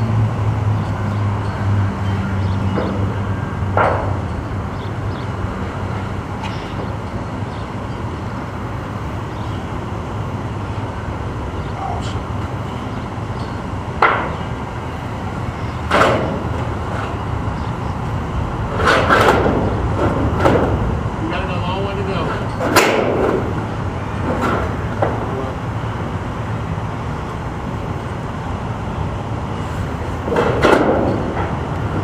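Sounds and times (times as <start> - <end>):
construction knocks and clanks: 0.0 - 7.7, 11.8 - 14.6, 15.7 - 25.6, 30.1 - 32.0
steady background noise: 0.0 - 32.0.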